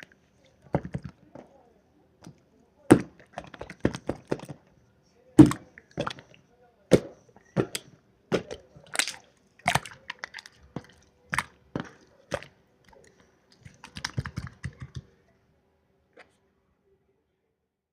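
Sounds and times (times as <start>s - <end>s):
slime squished by hand popping: 8.4s - 10.5s.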